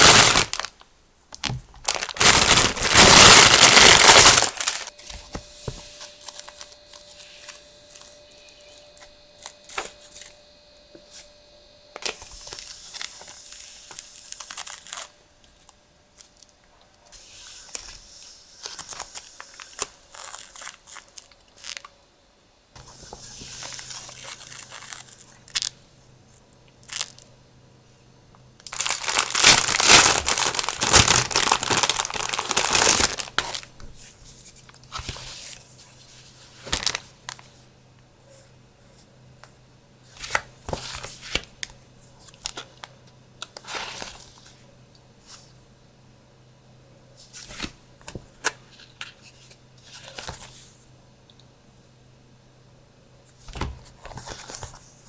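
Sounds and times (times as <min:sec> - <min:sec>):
packaging crinkling and tearing: 0:00.0 - 0:05.0, 0:12.0 - 0:15.1, 0:18.6 - 0:21.9, 0:23.6 - 0:25.8, 0:28.6 - 0:33.8, 0:36.6 - 0:37.4, 0:40.2 - 0:44.4.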